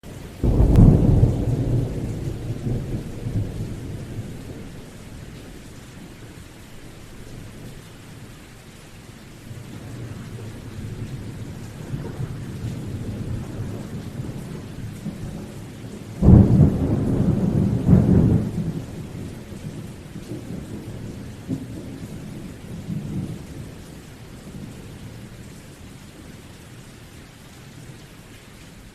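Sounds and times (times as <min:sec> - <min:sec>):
steady rain: 0:00.0 - 0:28.9
distant thunder rumbling: 0:00.3 - 0:06.4, 0:09.5 - 0:25.3
thunderclaps: 0:00.4 - 0:06.2, 0:09.5 - 0:23.7.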